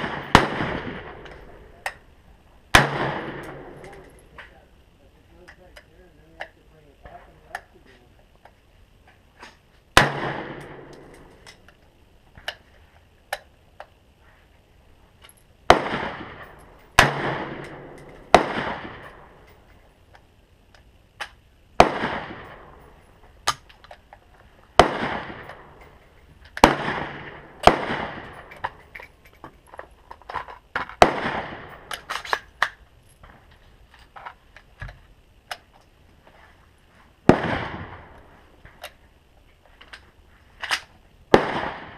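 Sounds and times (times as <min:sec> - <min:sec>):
rifle shots with echo: 0:00.0 - 0:02.0, 0:02.7 - 0:04.5, 0:10.0 - 0:11.5, 0:15.7 - 0:19.5, 0:21.8 - 0:23.6, 0:24.8 - 0:26.0, 0:26.6 - 0:28.8, 0:31.0 - 0:32.5, 0:37.2 - 0:38.2, 0:41.3 - 0:41.9.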